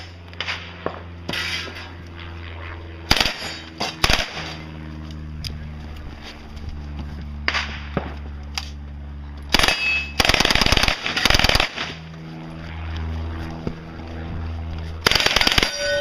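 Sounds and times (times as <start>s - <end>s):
low hum: 0.0s - 16.0s
submachine gun bursts: 9.5s - 11.9s, 15.1s - 15.8s.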